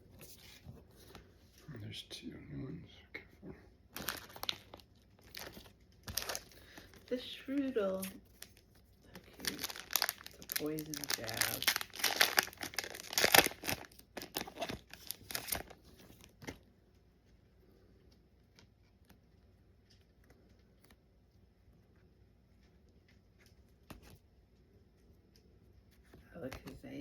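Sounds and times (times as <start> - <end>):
foil wrapper crinkling and tearing: 3.9 - 16.6.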